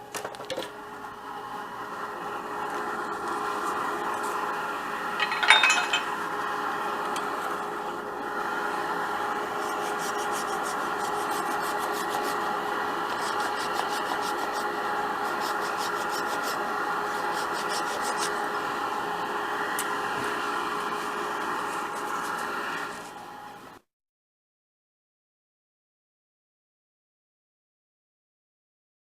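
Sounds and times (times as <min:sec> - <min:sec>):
wood lathe running: 0:06.2 - 0:23.3
tool rubbing spinning wood: 0:09.0 - 0:23.3
rapid fine scratching: 0:09.6 - 0:12.5, 0:13.1 - 0:18.4.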